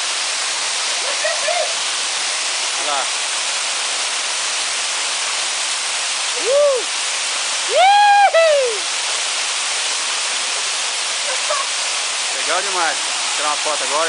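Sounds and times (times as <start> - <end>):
waterfall rushing: 0.0 - 14.0
person calling out: 6.4 - 6.9.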